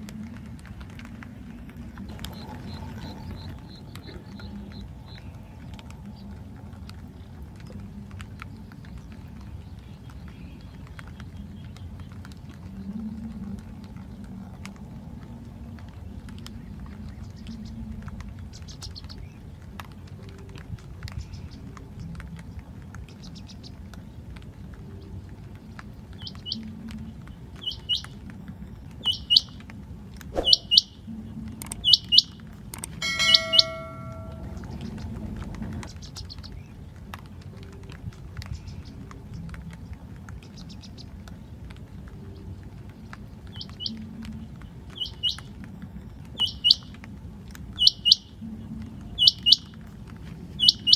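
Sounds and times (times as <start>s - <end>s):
quail calling in sharp high notes: 30.4s - 30.9s, 33.0s - 34.5s.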